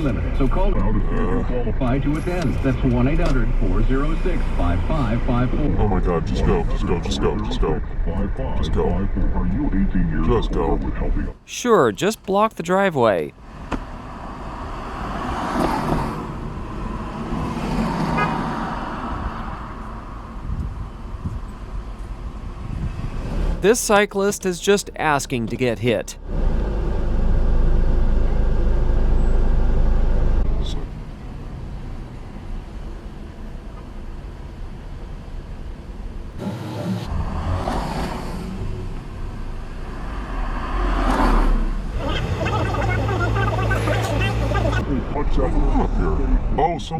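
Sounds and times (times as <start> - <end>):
engine and road rumble: 13.4 - 23.6, 26.2 - 36.4
cars passing by: 13.5 - 21.2, 37.1 - 44.9.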